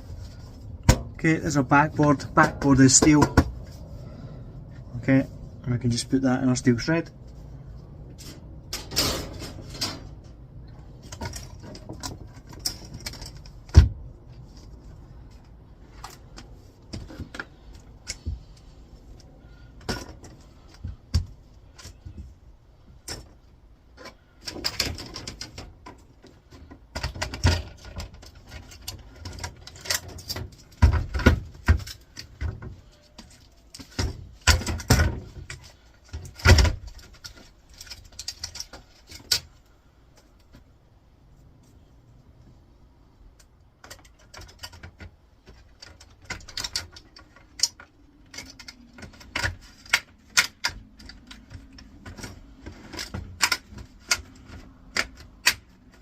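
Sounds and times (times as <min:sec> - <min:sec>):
plastic casing knocks and clatter: 0:24.4 - 0:39.3.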